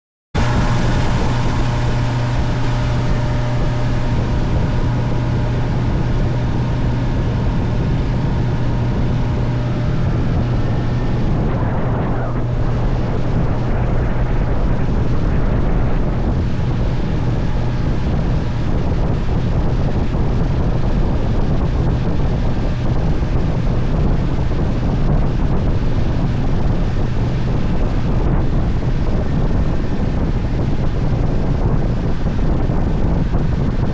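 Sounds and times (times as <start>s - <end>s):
motorboat engine humming: 0.4s - 33.9s
wind on microphone: 0.4s - 33.9s.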